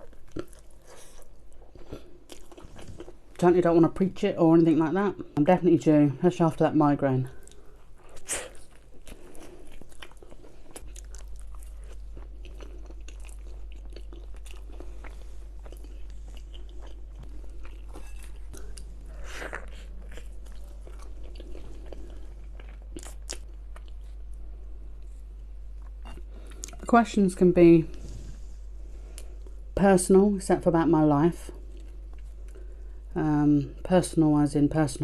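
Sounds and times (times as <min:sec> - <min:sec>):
chewing and crunching food: 0:00.0 - 0:03.5, 0:07.2 - 0:26.9, 0:31.4 - 0:33.1.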